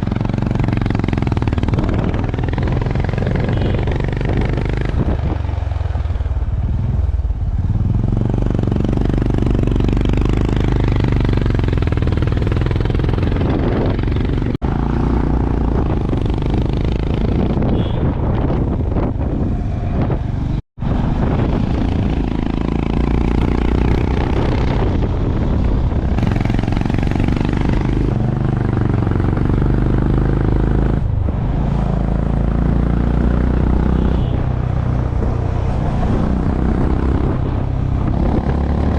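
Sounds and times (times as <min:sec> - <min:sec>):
motorcycle engine running: 0:00.0 - 0:20.6, 0:21.2 - 0:31.4.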